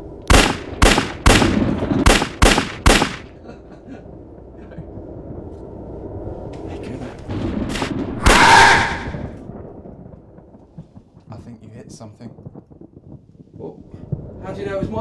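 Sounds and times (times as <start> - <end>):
gunshots: 0.3 - 3.4, 7.6 - 9.3.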